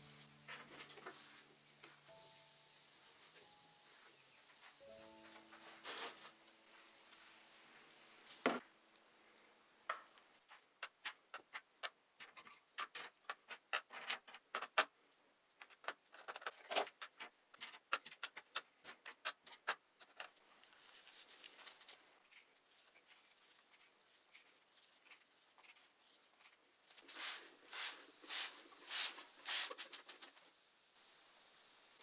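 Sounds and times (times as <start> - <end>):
short hiss: 27.0 - 32.0.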